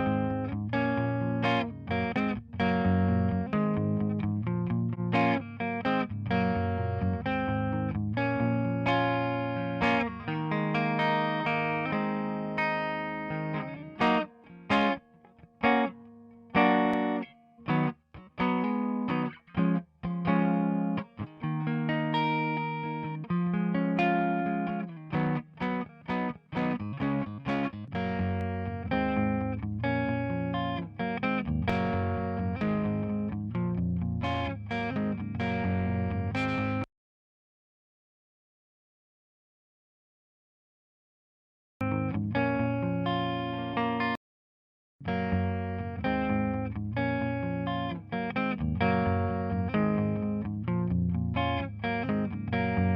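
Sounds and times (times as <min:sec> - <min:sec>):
electric guitar chords: 0:00.0 - 0:36.9, 0:41.8 - 0:44.2, 0:45.0 - 0:52.9.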